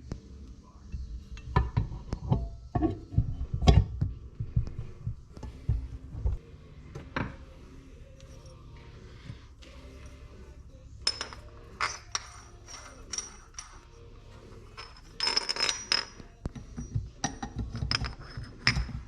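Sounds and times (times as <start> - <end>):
metal tools clinking on workbench: 11.0 - 14.0, 14.6 - 19.0.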